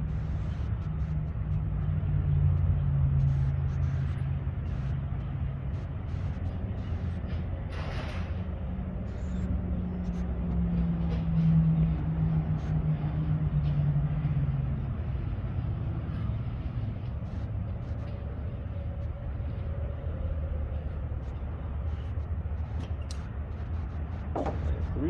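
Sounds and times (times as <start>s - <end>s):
low engine hum: 0.0s - 25.0s.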